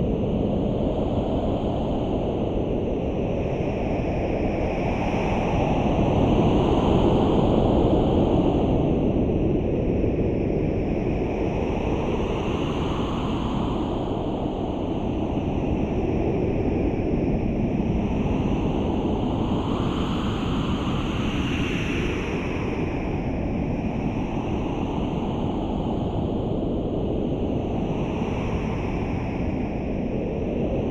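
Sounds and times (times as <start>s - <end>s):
rushing wind: 0.0s - 30.9s.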